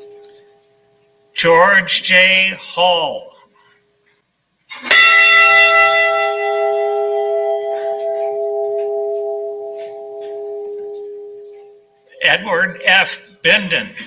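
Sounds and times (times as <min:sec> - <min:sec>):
ship's bell ringing: 0:00.0 - 0:00.6, 0:04.8 - 0:12.4.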